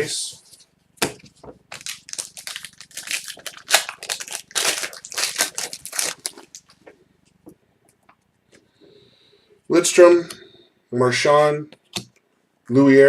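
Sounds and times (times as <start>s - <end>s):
foil wrapper crinkling and tearing: 1.7s - 6.8s.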